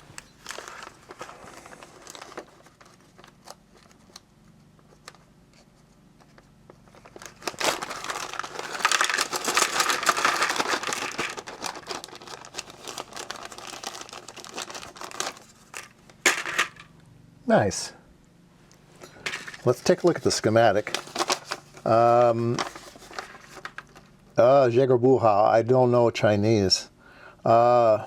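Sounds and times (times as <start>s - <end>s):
plastic packaging crinkling: 0.0s - 4.3s, 6.7s - 16.8s, 19.3s - 24.1s.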